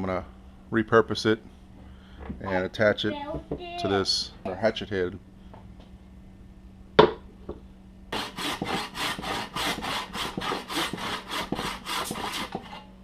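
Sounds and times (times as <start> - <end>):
hand tool cutting wood: 8.2 - 12.8.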